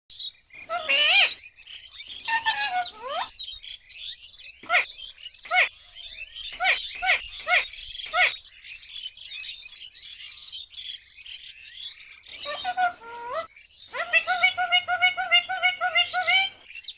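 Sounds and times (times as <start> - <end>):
parakeet gliding call: 0.7 - 1.4, 4.6 - 5.7, 6.5 - 8.4, 12.3 - 16.6
parakeet short squawks: 0.7 - 1.4, 5.5 - 5.7, 6.6 - 8.4.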